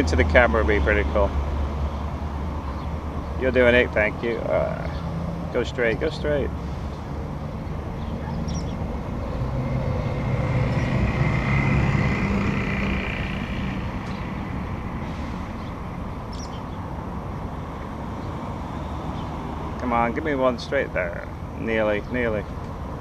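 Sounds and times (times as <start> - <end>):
vehicle passing: 0.0 - 23.0
faint high bird calls: 8.0 - 8.8.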